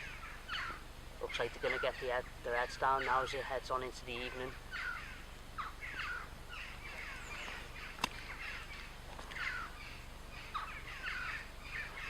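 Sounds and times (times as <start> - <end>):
birds calling downward sweeps: 0.0 - 12.0.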